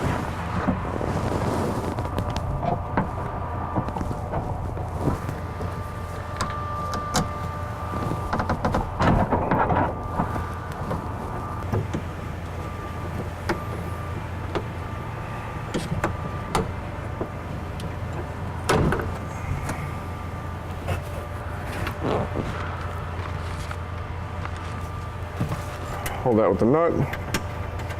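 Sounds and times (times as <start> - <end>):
steady background hum: 0.0 - 27.9
car door parts clicking and rattling: 5.5 - 12.3, 15.7 - 17.4, 18.1 - 19.9.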